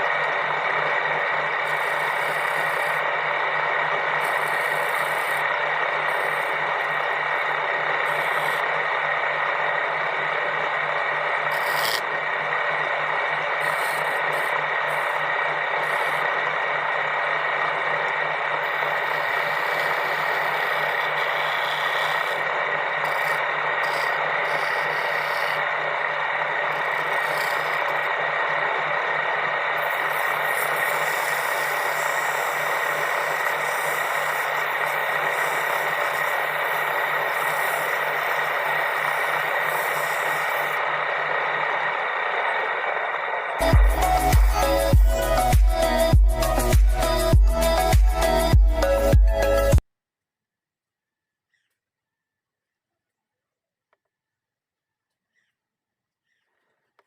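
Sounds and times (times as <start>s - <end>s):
tool rasping wood: 0.0s - 42.4s
constant hum: 0.0s - 49.8s.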